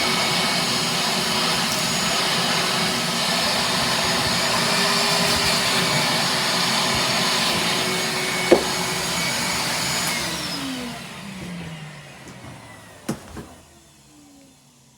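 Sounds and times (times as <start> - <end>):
sharp knock: 8.5 - 8.9.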